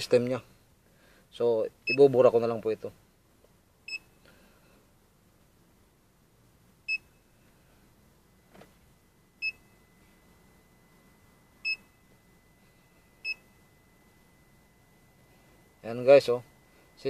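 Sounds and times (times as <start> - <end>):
faint high whine: 0.0 - 17.0
scan tool beeps: 1.9 - 2.1, 3.9 - 4.1, 6.9 - 7.2, 9.4 - 9.7, 11.6 - 12.0, 13.2 - 13.6.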